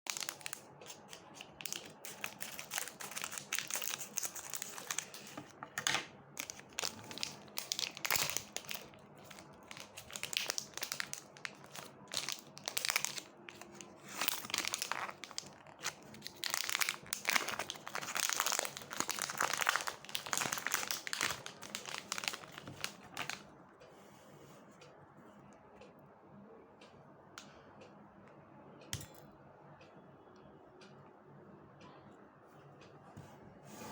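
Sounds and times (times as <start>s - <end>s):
chocolate wrapper crinkling: 0.1s - 5.6s, 6.4s - 23.4s.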